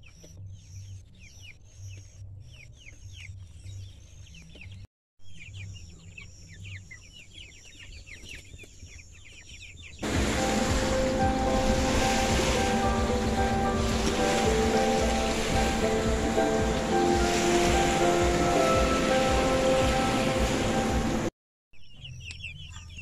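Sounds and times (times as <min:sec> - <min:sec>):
chicks peeping: 0:00.0 - 0:21.2, 0:21.9 - 0:23.0
loud background music: 0:10.0 - 0:21.3.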